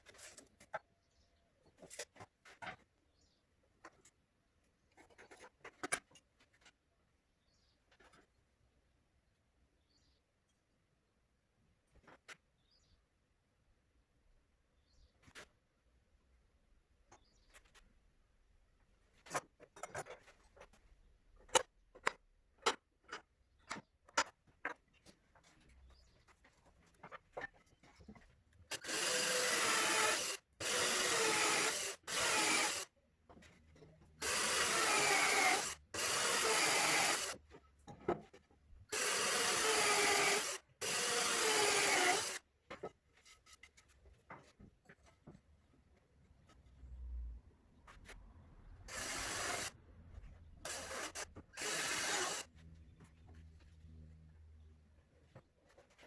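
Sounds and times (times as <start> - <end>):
drill boring into wood: 28.7 - 32.9, 34.2 - 37.4, 38.9 - 42.4, 48.9 - 49.8, 50.6 - 52.5.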